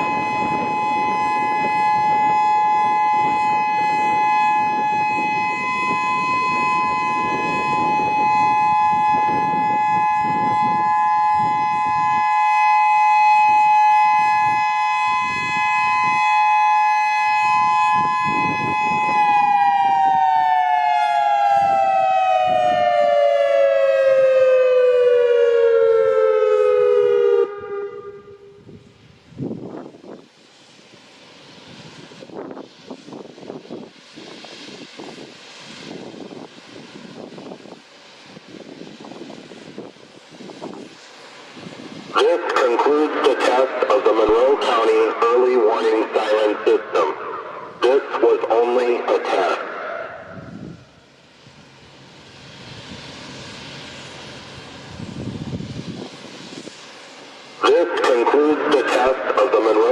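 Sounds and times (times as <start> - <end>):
outdoor warning siren two-note chord: 0.0 - 28.9.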